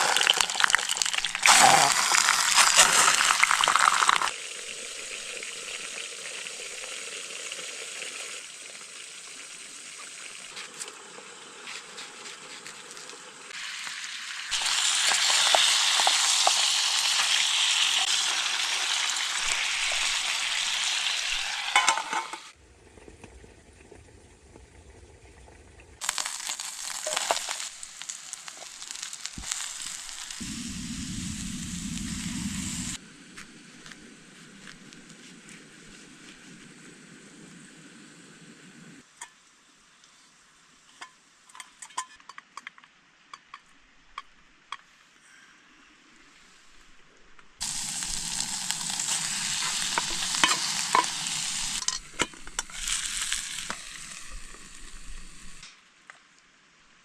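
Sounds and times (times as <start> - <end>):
fish sizzling in frying: 0.0 - 22.6, 26.0 - 33.0, 47.6 - 55.7.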